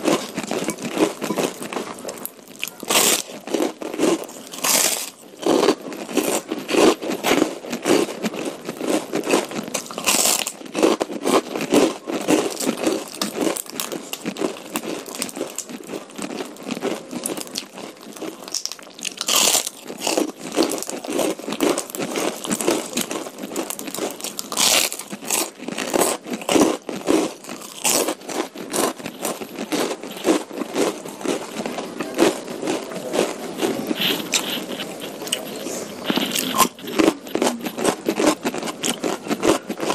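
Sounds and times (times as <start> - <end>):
chewing and biting food: 0.0 - 39.9
wet mouth sounds: 27.4 - 39.9.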